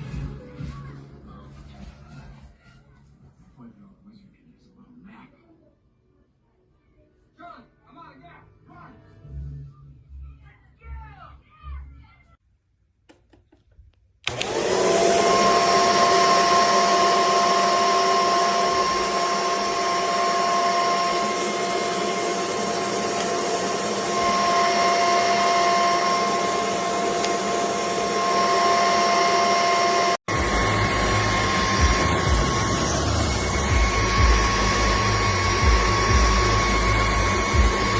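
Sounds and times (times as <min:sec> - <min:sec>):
vacuum cleaner motor whine: 0:14.3 - 0:37.9
deeper hum: 0:30.3 - 0:37.9.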